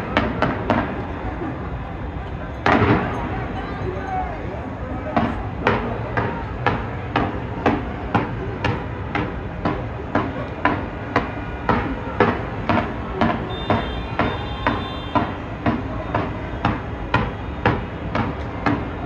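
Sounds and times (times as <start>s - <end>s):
fireworks bangs: 0.0s - 3.6s, 5.1s - 19.0s.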